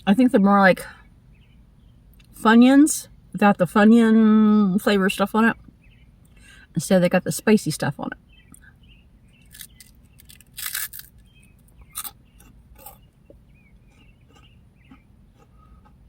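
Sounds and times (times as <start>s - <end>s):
person chewing crunchy snack: 9.4s - 13.1s, 13.8s - 16.0s.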